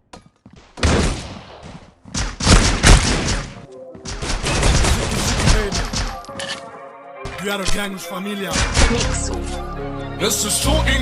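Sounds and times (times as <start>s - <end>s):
gunfire volleys: 0.8s - 6.2s.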